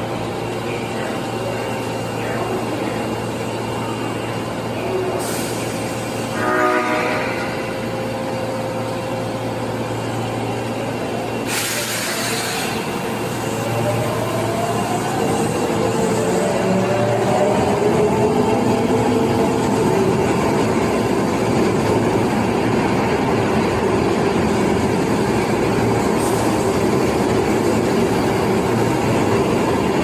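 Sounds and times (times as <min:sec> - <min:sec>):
train horn blast: 0:06.3 - 0:07.7
air hiss: 0:11.4 - 0:12.8.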